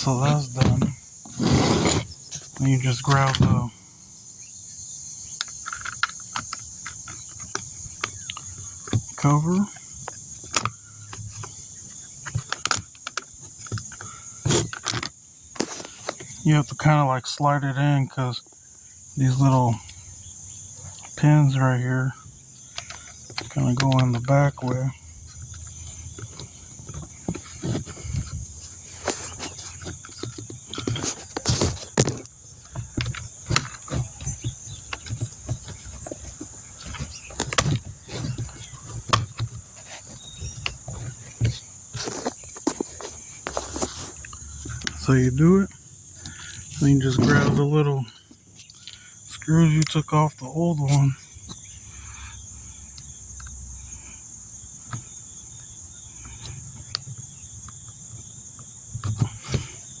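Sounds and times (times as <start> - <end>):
high-pitched insect trill: 0.0 - 60.0
low handling thumps: 23.2 - 48.0
plastic clicks and knocks: 25.3 - 45.0.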